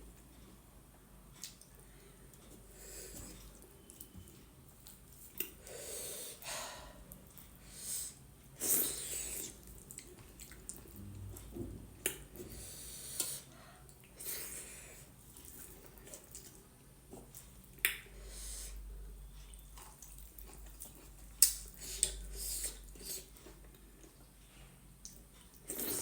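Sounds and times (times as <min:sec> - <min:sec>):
wet chewing and slurping: 0:15.3 - 0:17.5, 0:25.0 - 0:26.0.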